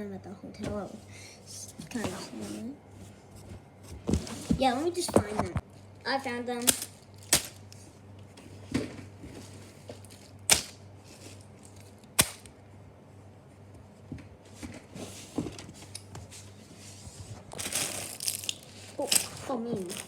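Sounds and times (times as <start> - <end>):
low steady hum: 0.0 - 20.0
knocks and rustling of handling: 1.7 - 5.7, 13.6 - 20.0.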